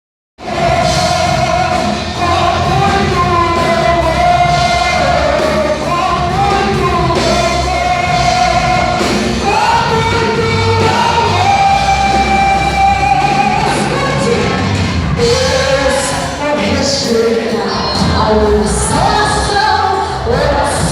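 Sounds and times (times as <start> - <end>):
gospel singing over a band: 0.4 - 20.9.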